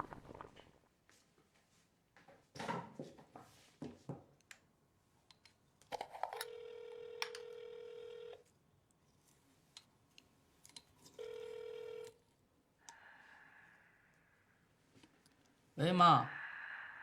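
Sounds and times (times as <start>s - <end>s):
telephone ringback tone: 6.4s - 8.4s, 11.2s - 12.2s.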